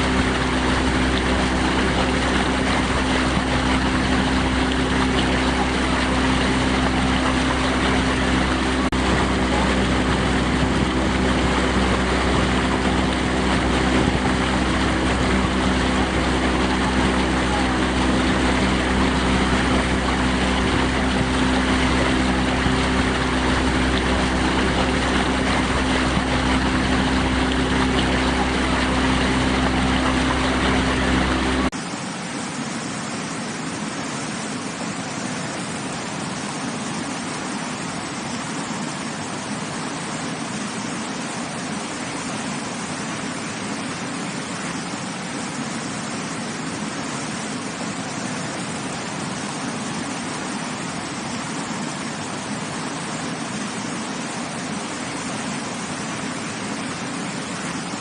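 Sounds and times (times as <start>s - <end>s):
engine drone: 0.0s - 58.0s
water rushing against rocks: 0.0s - 58.0s.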